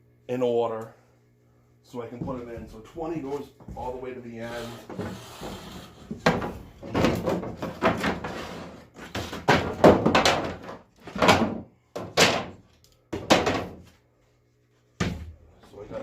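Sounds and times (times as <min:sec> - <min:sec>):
wooden boards knocking: 0:06.1 - 0:08.3, 0:09.1 - 0:13.8.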